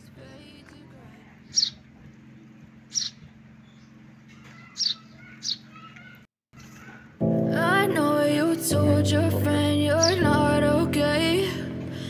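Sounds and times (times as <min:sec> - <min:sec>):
sparrow chirping: 0:01.4 - 0:01.8, 0:02.9 - 0:06.2, 0:10.0 - 0:10.2.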